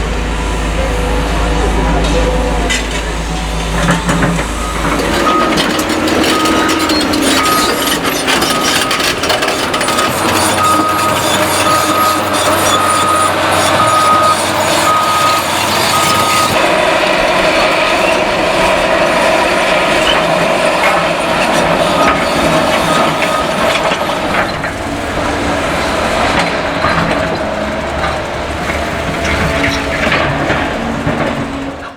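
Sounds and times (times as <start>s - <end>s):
reversing alarm beeping: 0.0s - 16.7s, 20.0s - 24.6s
excavator diesel engine running: 0.0s - 31.9s.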